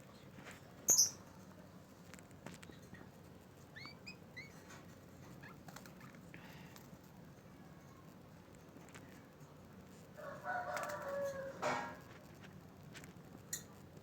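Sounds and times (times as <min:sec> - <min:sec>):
bird chirping: 0:00.9 - 0:01.2.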